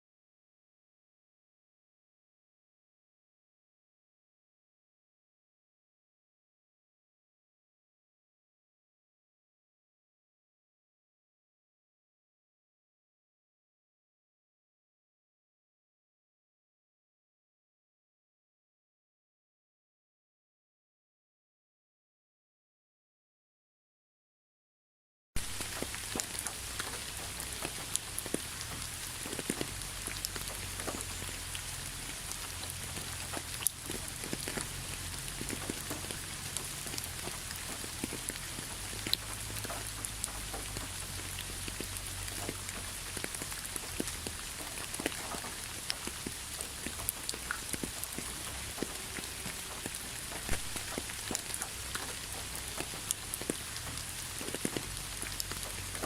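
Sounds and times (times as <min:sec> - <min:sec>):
raindrops ticking on a surface: 0:25.4 - 0:56.0
steady rain hiss: 0:25.4 - 0:56.0.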